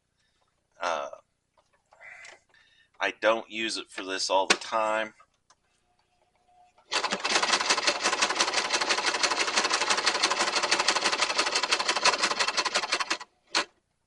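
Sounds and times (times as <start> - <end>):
sewing machine stitching: 6.9 - 13.8.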